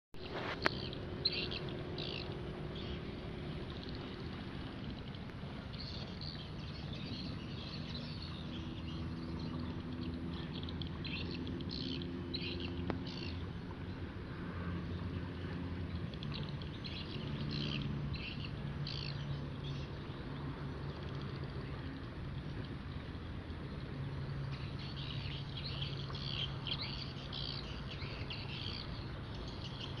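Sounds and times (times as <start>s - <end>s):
small birds chirping: 0.2s - 14.0s, 24.4s - 30.0s
low steady hum: 0.2s - 30.0s.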